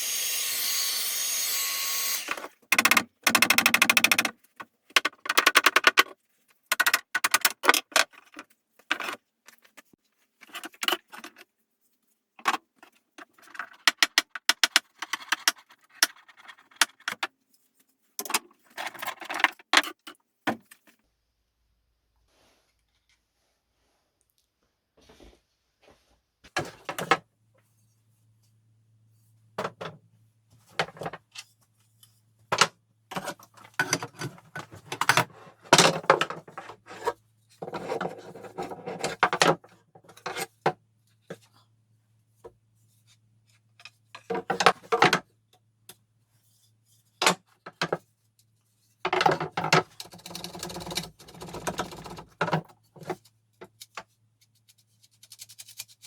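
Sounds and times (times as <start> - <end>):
wood and metal parts knocking: 2.7 - 4.3.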